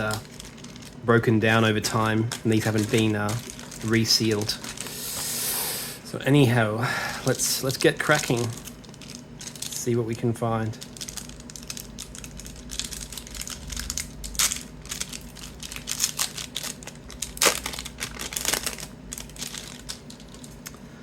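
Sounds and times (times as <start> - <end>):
wrapper snapping: 0.0 - 1.0, 2.2 - 5.0, 7.6 - 9.9, 10.8 - 20.8
wrapper crinkling and tearing: 0.0 - 5.1, 7.3 - 20.8.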